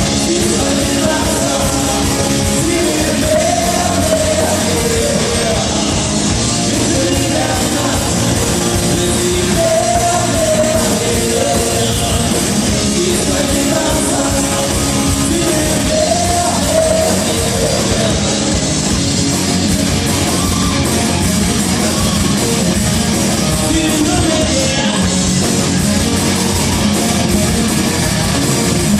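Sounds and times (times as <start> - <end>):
person singing: 0.0 - 19.0, 23.4 - 25.3
live rock band playing: 0.0 - 28.9.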